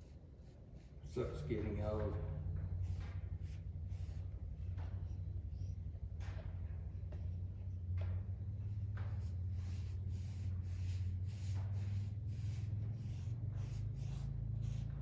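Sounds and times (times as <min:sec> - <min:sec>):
brush scratching on rusty steel: 0:00.0 - 0:02.0, 0:09.1 - 0:15.0
steady low hum: 0:00.0 - 0:15.0.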